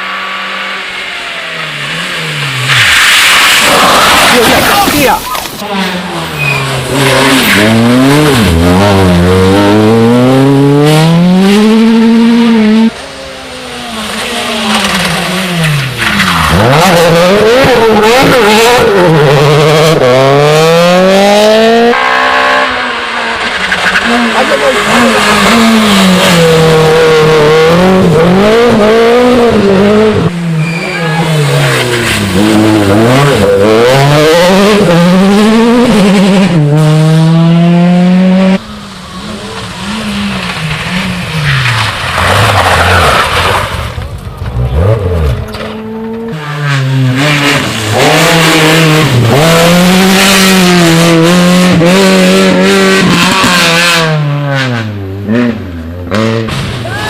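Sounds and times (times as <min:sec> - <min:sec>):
rally car engine revving: 0:00.0 - 0:57.0
short high squeal: 0:06.3 - 0:07.7, 0:30.5 - 0:32.0.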